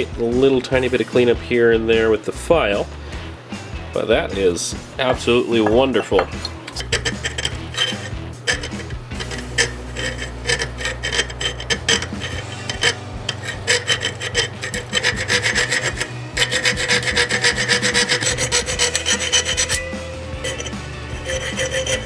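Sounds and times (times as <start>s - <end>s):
hand file rasping over metal: 5.6s - 22.0s.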